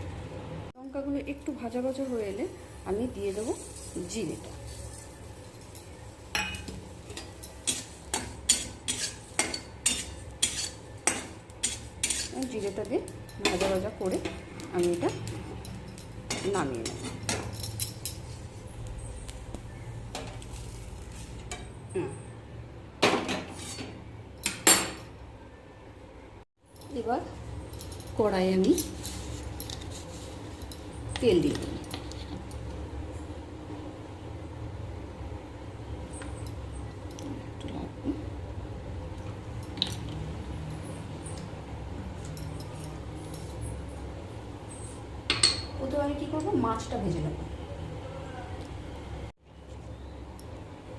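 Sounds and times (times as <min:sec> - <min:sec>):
low kitchen hum: 0:00.0 - 0:50.9
metal spatula scraping pan: 0:06.4 - 0:12.8, 0:23.3 - 0:24.0.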